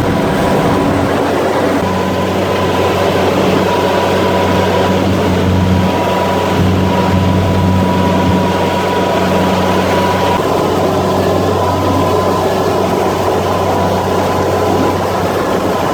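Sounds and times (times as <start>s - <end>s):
combine harvester running: 0.0s - 15.9s.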